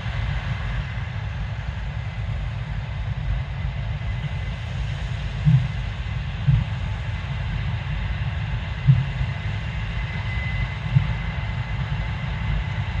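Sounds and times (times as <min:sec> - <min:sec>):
heavy low thuds: 0:05.4 - 0:07.0, 0:08.8 - 0:09.4.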